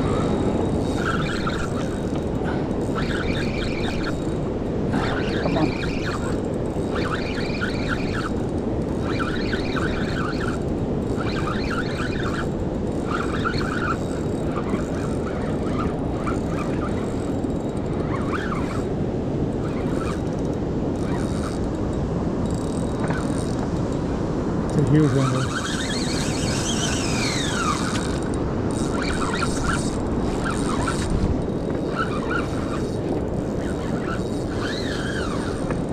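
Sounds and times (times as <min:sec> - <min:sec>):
bird calling: 0:05.0 - 0:06.3.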